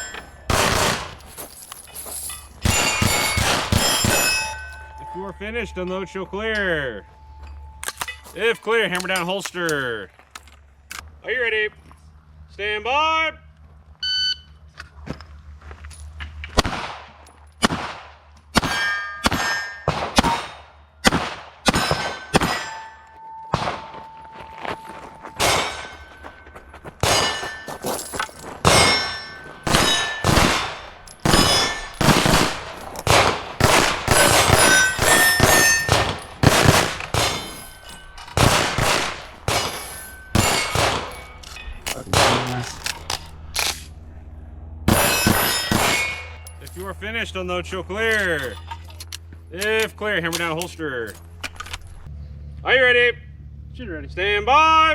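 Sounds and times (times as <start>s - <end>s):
pistol shots: 0.0s - 1.5s, 2.6s - 4.7s, 16.6s - 24.2s, 25.4s - 26.3s, 27.0s - 27.8s, 28.6s - 43.9s, 44.9s - 46.4s
steel plate clanging and ringing: 0.0s - 8.8s, 18.6s - 21.0s, 21.7s - 43.5s, 44.9s - 46.9s.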